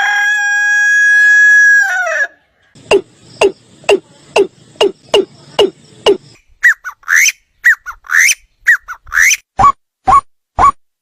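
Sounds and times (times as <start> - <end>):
rooster crowing: 0.0 - 2.4
bird calling sharp downward notes: 2.8 - 10.8.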